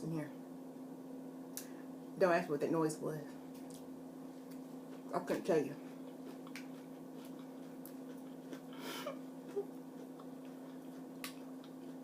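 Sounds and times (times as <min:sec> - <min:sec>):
steady low hum: 0:00.0 - 0:12.0
soft eating clicks: 0:03.6 - 0:08.8, 0:09.4 - 0:12.0.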